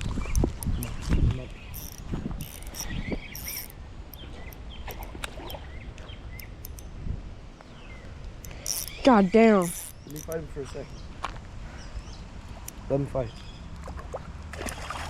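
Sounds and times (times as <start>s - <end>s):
insects chirping: 1.6s - 11.3s.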